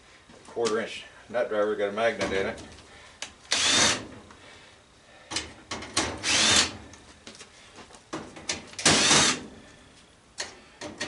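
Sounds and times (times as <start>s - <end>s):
power drill spinning: 3.5s - 4.0s, 6.2s - 6.7s, 8.9s - 9.4s.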